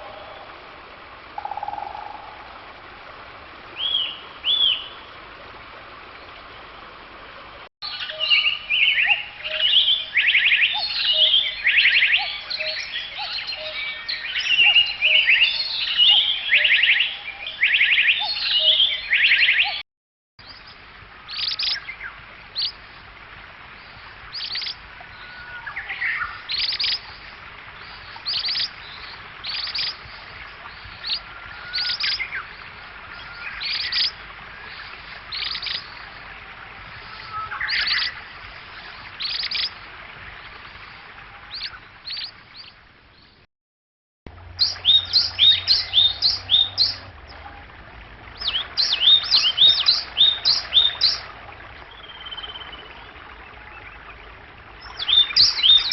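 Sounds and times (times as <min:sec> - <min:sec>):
songbirds chirping: 0:03.7 - 0:19.8, 0:44.3 - 0:55.9.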